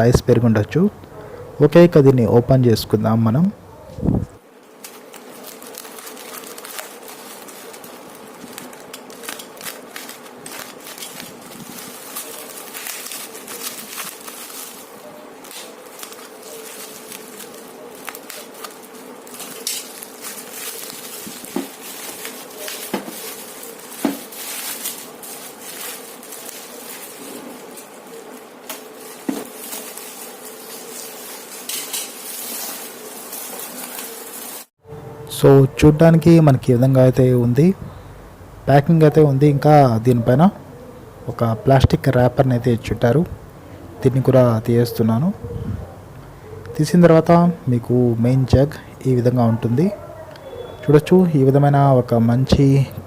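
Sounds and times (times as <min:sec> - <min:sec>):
packaging crackling and rustling: 0:04.7 - 0:34.7.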